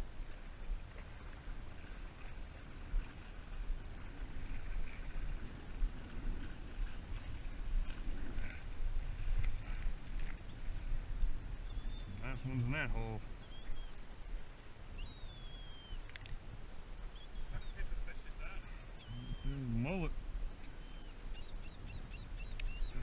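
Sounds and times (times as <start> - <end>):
wind buffeting microphone: 0.0 - 12.2.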